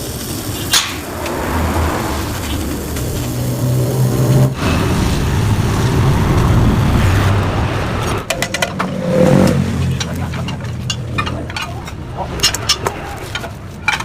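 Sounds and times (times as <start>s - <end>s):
two-stroke motorcycle engine revving: 0.0s - 7.6s.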